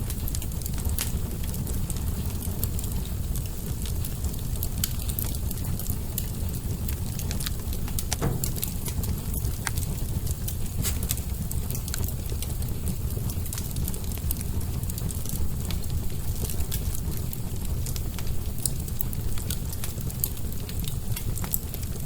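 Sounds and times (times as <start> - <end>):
wood fire roaring and crackling: 0.0 - 22.0.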